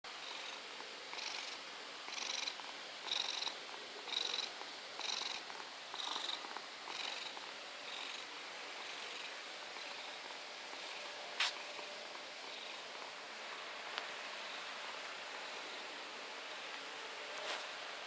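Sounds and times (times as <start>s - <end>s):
cat snoring with whistle: 0.2s - 5.4s, 6.0s - 10.2s.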